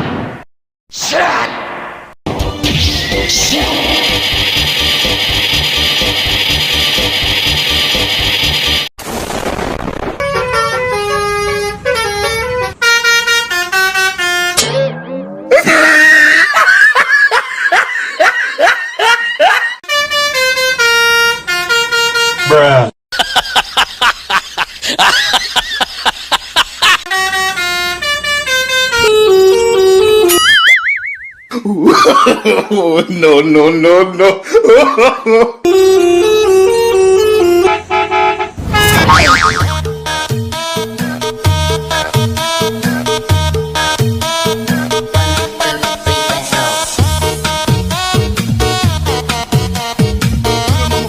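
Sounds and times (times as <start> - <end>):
multi-tone bus horn tune: 3.3 - 8.9, 10.2 - 15.0, 19.8 - 22.9, 27.1 - 30.4, 35.7 - 51.0
upbeat electronic dance music: 41.4 - 51.0.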